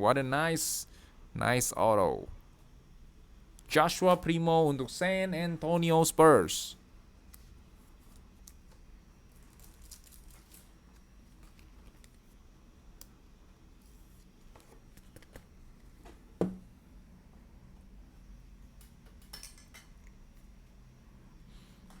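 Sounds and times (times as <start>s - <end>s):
cards and packaging rustling: 8.0s - 12.4s.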